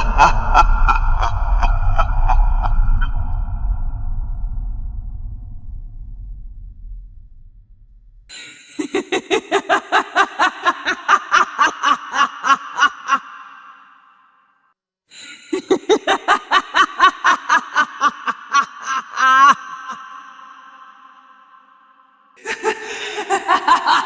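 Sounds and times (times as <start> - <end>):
woman cackling laugh: 0.0 - 3.0, 8.3 - 13.9, 15.2 - 21.2, 22.4 - 24.0.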